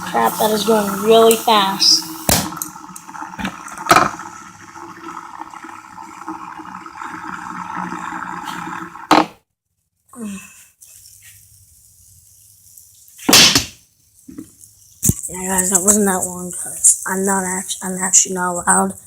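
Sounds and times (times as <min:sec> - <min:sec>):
fidget spinner whirring: 0:00.0 - 0:02.2
sharp knock: 0:02.3 - 0:02.5, 0:13.3 - 0:13.8.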